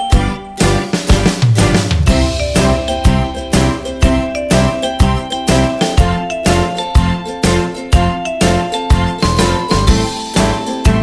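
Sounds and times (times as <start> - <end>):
music with steady beat: 0.0 - 11.0
bright tinkling melody: 2.1 - 10.9.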